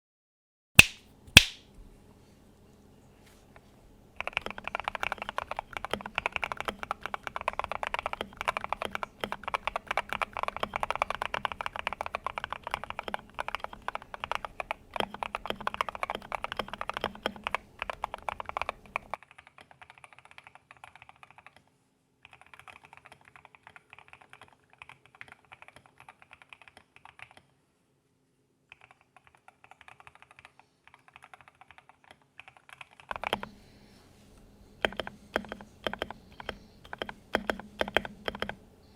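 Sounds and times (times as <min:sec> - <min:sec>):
mechanical keyboard key clacking: 0:34.8 - 0:38.6.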